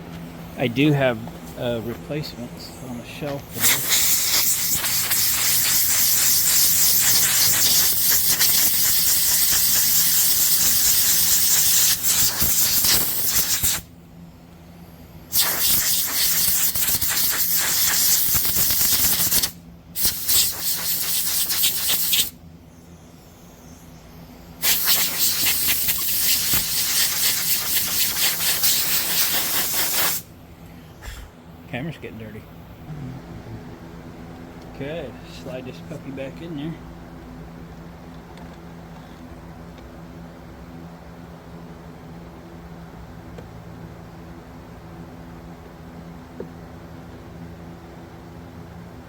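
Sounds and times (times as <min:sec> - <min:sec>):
compressed air blow gun hissing: 0:03.5 - 0:13.9, 0:15.3 - 0:22.4, 0:24.6 - 0:30.3.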